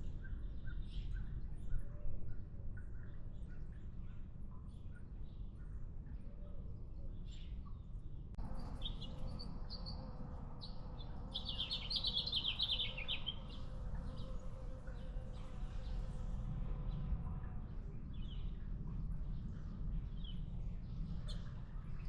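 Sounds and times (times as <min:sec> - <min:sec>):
small songbirds chirping: 0:07.2 - 0:16.1
steady low rumble: 0:08.3 - 0:22.0.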